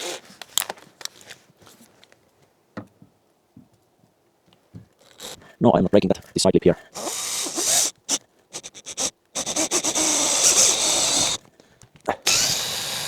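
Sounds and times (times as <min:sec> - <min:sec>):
power drill boring through wood: 0:00.0 - 0:00.2, 0:05.0 - 0:05.4, 0:06.9 - 0:11.5, 0:12.2 - 0:13.0.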